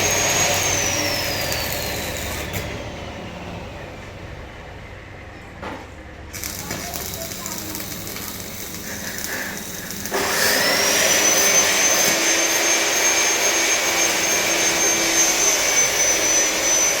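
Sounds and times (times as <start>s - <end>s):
angle grinder whining: 0.0s - 3.0s, 6.3s - 17.0s.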